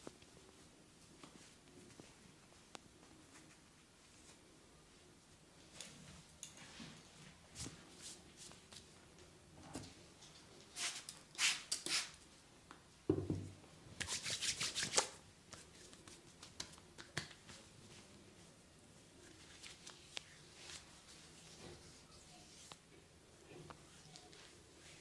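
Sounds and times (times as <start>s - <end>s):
hands brushing and slapping skin: 14.0s - 17.7s.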